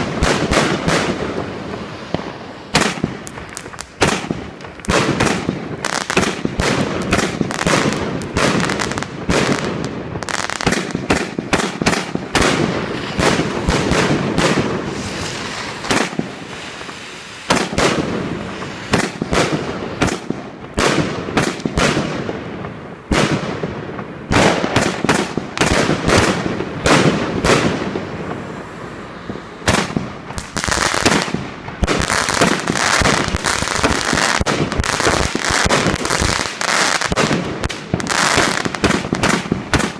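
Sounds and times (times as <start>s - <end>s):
firework cake bangs: 10.6s - 22.3s.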